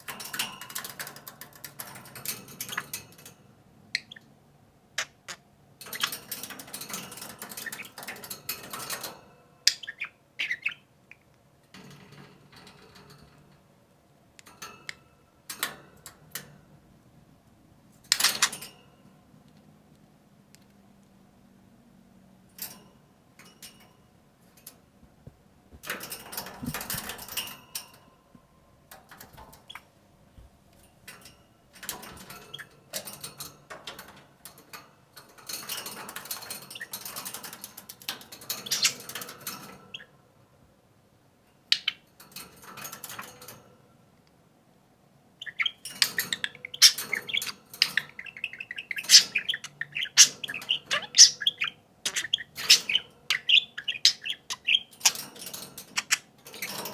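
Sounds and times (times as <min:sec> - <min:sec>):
budgerigars chirping and warbling: 0:04.0 - 0:04.3, 0:05.0 - 0:09.1, 0:09.7 - 0:11.2, 0:18.1 - 0:18.7, 0:32.2 - 0:33.2, 0:35.6 - 0:37.8, 0:38.4 - 0:40.1, 0:41.7 - 0:42.1, 0:45.4 - 0:56.9.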